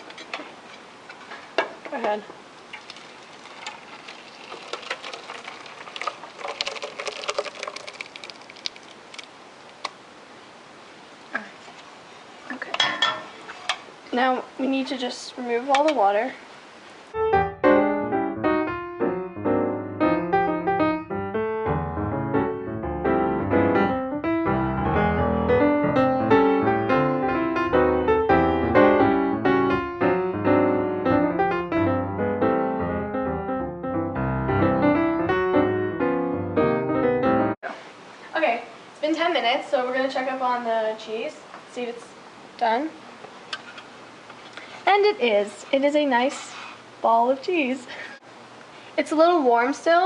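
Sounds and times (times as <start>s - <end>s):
liquid dripping into a pot: 2.6s - 9.4s
light busy piano melody: 17.2s - 37.6s.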